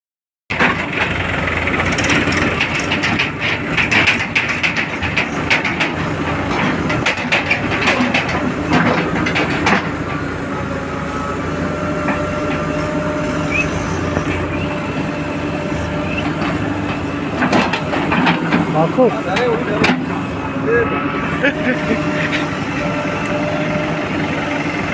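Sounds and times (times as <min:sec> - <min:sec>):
clatter of knocks and rattles: 0:00.5 - 0:10.2, 0:14.3 - 0:20.6
heavy machinery engine running: 0:00.5 - 0:24.9.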